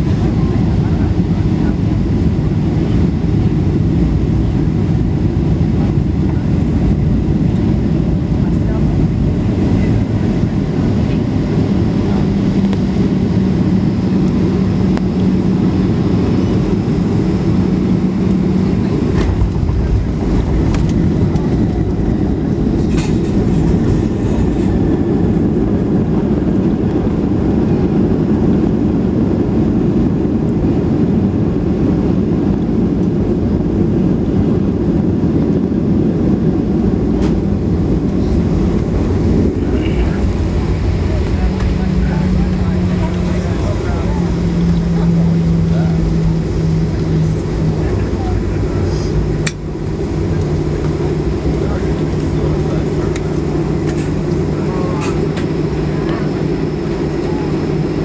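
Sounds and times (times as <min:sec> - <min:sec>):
airliner cabin rumble: 0:00.0 - 0:58.0
steady hum: 0:00.0 - 0:58.0.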